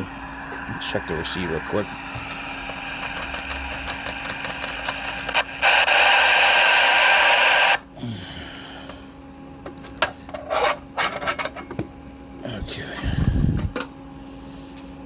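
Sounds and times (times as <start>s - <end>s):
radio static hissing: 0.0s - 7.8s.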